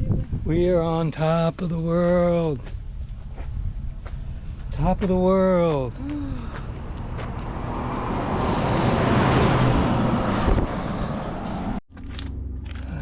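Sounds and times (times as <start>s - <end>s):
road vehicle passing: 5.7s - 13.0s.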